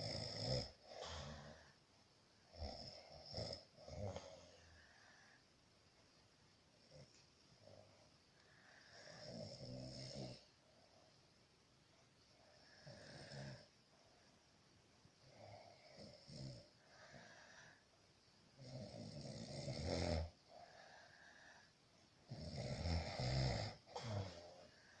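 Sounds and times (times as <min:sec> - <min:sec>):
man snoring: 0:00.0 - 0:01.7, 0:02.5 - 0:04.8, 0:08.8 - 0:10.5, 0:12.6 - 0:13.7, 0:15.3 - 0:17.6, 0:18.6 - 0:21.4, 0:22.3 - 0:25.0.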